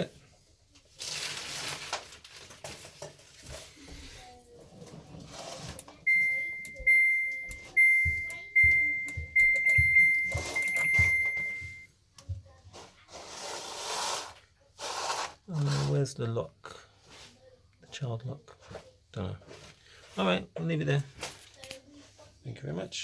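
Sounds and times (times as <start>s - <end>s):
high electronic beeps: 6.1s - 11.9s.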